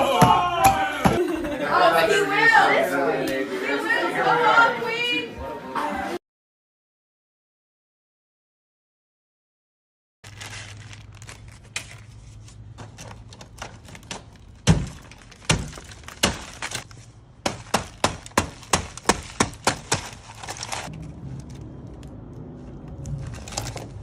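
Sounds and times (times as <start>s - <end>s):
sharp knocks or cracks: 14.1s - 16.8s, 17.4s - 20.9s.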